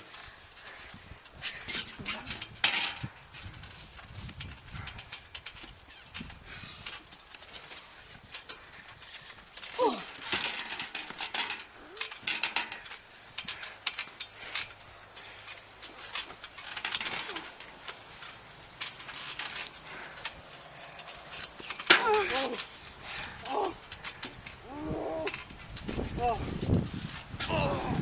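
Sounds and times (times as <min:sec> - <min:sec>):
trampoline springs clattering: 0:00.0 - 0:28.0
person falling cry: 0:09.7 - 0:10.2, 0:22.0 - 0:22.6, 0:27.4 - 0:28.0.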